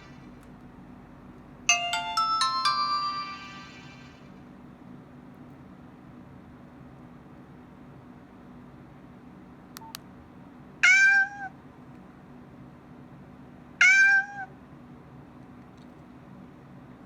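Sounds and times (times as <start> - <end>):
phone alert tone: 1.7 - 4.2.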